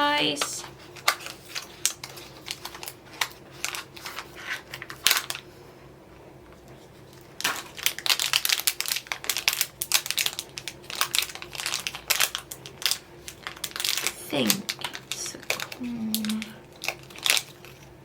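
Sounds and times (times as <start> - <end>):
packaging crinkling: 0.6 - 5.5, 7.1 - 17.9
packaging taps and rustles: 6.6 - 17.8.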